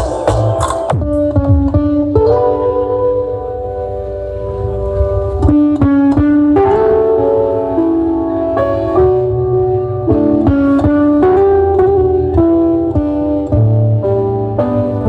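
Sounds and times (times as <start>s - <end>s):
plucked guitar-like melody: 0.0s - 15.0s
deep bass line: 4.2s - 7.0s.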